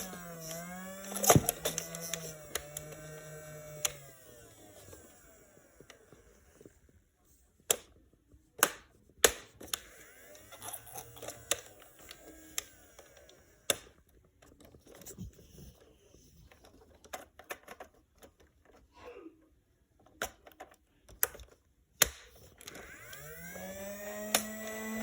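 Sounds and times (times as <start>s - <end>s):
sharp plastic clicks: 0.0s - 4.2s, 7.6s - 15.1s, 20.1s - 25.0s.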